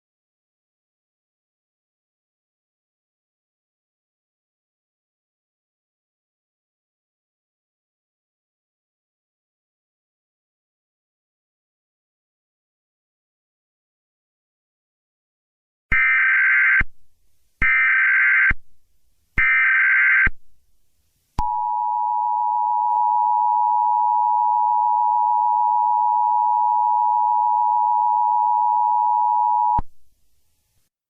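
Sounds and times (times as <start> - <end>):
two-tone attention signal: 21.4 - 29.8.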